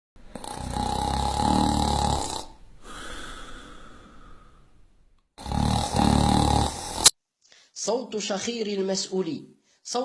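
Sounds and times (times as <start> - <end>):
person snoring loudly: 0.3 - 4.6, 5.4 - 7.2
breathy out-breath: 2.8 - 4.8.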